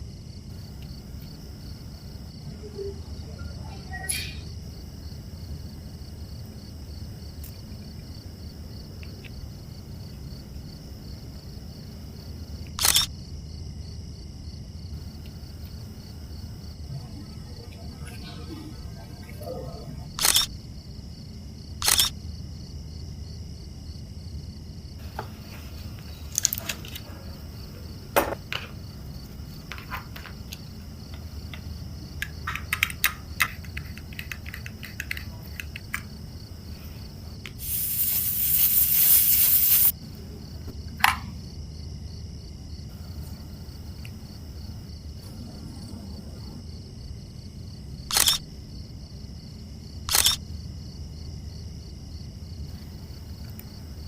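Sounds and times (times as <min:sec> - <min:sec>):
hiss: 0:37.5 - 0:40.0.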